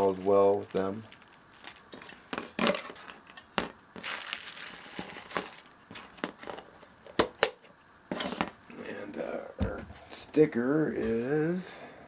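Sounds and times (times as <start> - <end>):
crinkling and rustling: 0.0 - 7.2.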